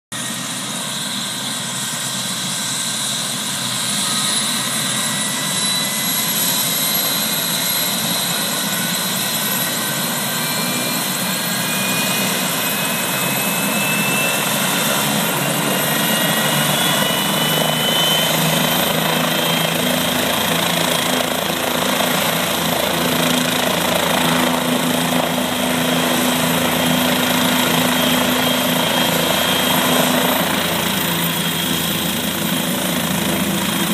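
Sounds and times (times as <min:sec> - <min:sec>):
helicopter turbine and rotor: 0:00.1 - 0:33.9.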